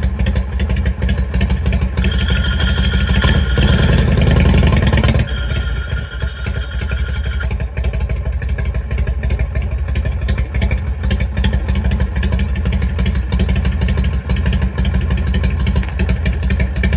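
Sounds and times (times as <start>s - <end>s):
motorcycle engine running: 0.0s - 16.9s
higher tone: 1.8s - 8.0s.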